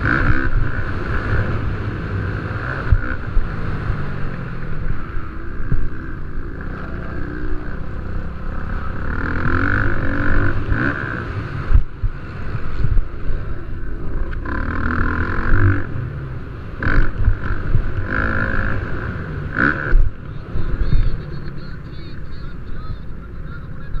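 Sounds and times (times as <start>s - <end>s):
wind buffeting microphone: 0.0s - 21.4s
dirt bike engines racing: 0.0s - 24.0s.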